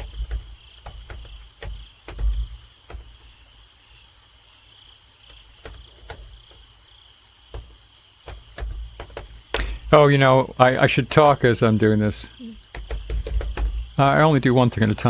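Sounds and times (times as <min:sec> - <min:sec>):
sharp clicks and knocks: 0:00.0 - 0:03.4, 0:05.2 - 0:06.7, 0:07.5 - 0:09.8, 0:12.6 - 0:14.0
crickets chirping: 0:00.0 - 0:15.0.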